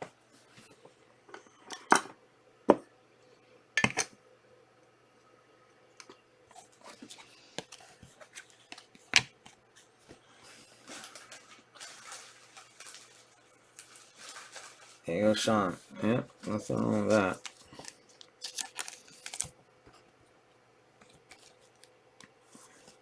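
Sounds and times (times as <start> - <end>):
packaging rustling: 10.5 - 15.8, 16.4 - 19.6, 21.0 - 21.9
card wrapper snapping and crackling: 17.4 - 19.6.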